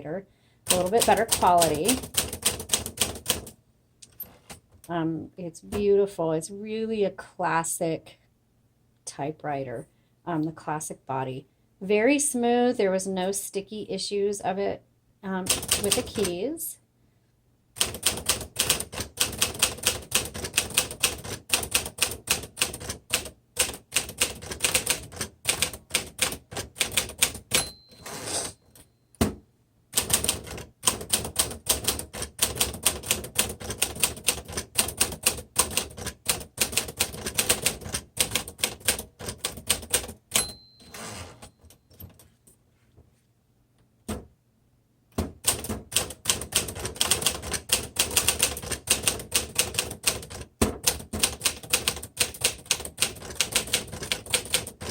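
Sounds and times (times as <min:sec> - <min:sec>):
manual typewriter typing: 0:00.7 - 0:04.6, 0:15.4 - 0:16.4, 0:17.8 - 0:28.5, 0:30.0 - 0:40.5, 0:45.4 - 0:54.9
typewriter bell ring: 0:27.5 - 0:29.0, 0:40.3 - 0:42.2.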